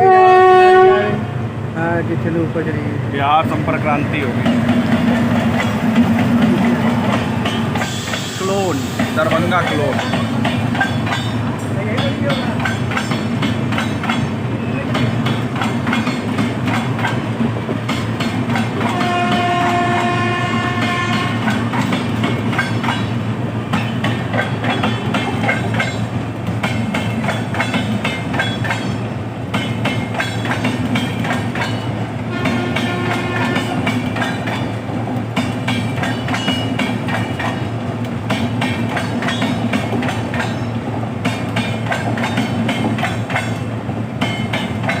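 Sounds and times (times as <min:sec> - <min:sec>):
locomotive horn: 0:00.0 - 0:01.4, 0:18.8 - 0:21.5, 0:32.3 - 0:33.9
train clickety-clack over rail joints: 0:00.0 - 0:45.0.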